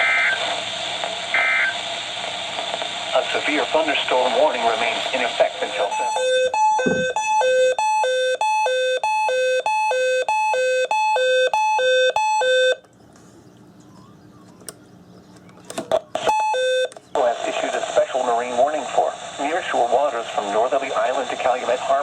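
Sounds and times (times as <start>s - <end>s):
two-tone warbling alert alarm: 5.9s - 12.7s.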